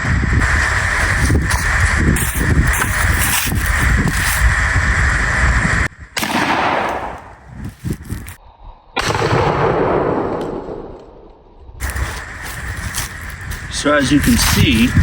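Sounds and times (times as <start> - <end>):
shotgun blasts: 6.2 - 7.4, 9.0 - 11.2.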